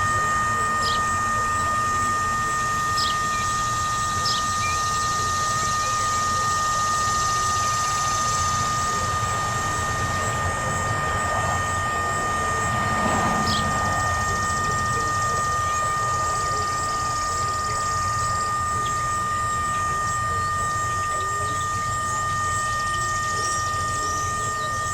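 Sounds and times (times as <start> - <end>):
siren electrical buzz: 0.0 - 24.9.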